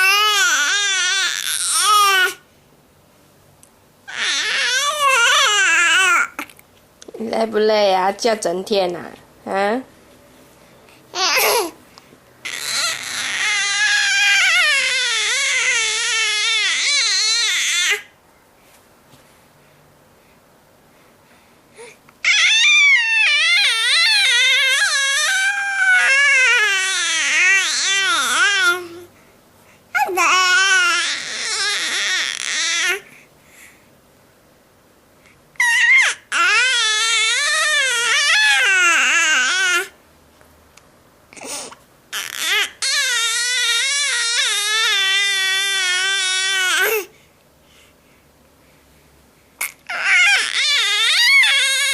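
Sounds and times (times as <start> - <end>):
harsh wavering cry: 12.4 - 18.1, 22.2 - 28.7, 35.6 - 39.8, 49.6 - 51.9.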